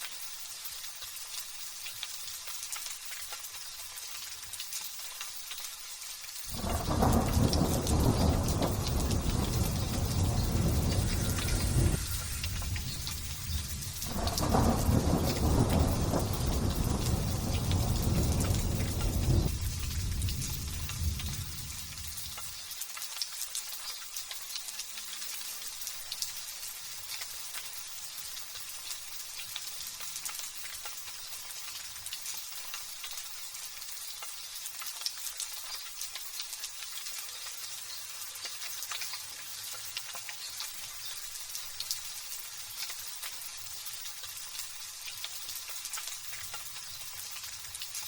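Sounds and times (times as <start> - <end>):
light drizzle pattering: 0.0 - 48.0
low thunder rumble: 6.5 - 22.4.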